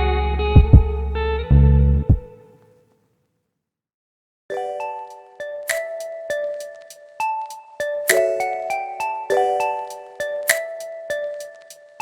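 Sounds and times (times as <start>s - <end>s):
sharp percussive hits: 0.6s - 1.0s.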